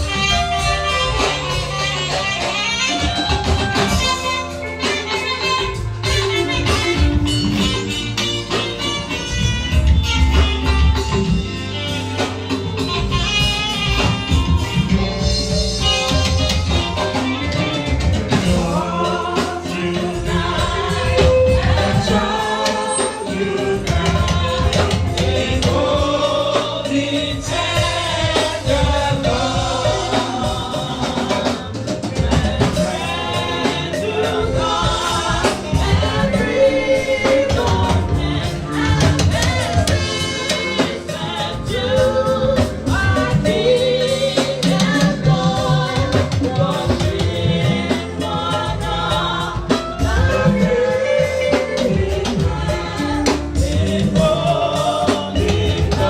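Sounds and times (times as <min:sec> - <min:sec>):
drum kit and percussion: 0:00.0 - 0:56.0
group singing a hymn: 0:00.0 - 0:56.0.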